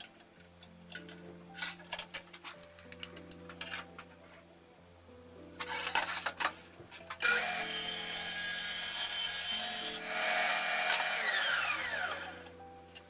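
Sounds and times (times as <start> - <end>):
saw blade winding down: 7.2 - 12.5
power saw cutting plywood: 7.2 - 12.6.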